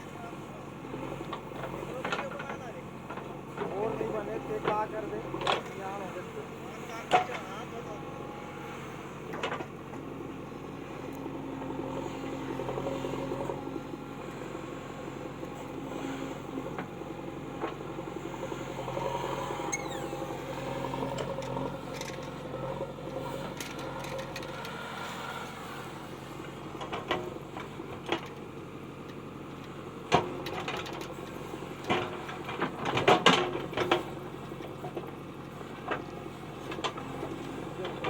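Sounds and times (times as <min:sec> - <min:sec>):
mechanical hum: 0:10.2 - 0:27.9.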